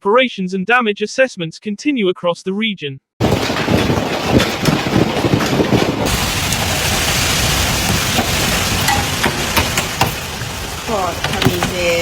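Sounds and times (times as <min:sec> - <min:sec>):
hailstones clacking on hard surfaces: 0:03.2 - 0:12.0
heavy hail rushing: 0:03.2 - 0:12.0.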